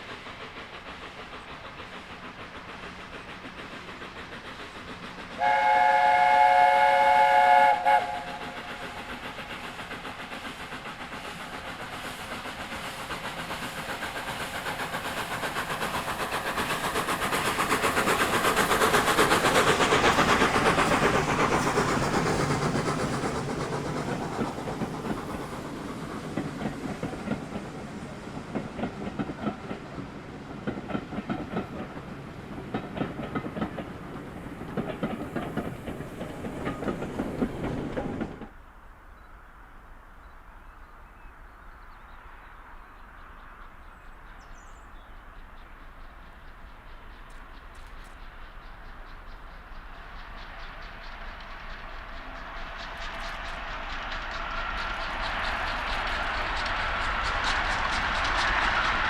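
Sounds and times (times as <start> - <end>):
steam train passing: 0.0 - 59.0
wheels clicking over rail joints: 8.5 - 38.6.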